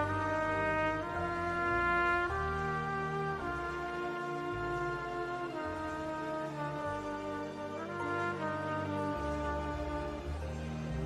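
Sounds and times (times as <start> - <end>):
bass line: 0.0 - 10.6
band playing slow chords: 0.0 - 10.9.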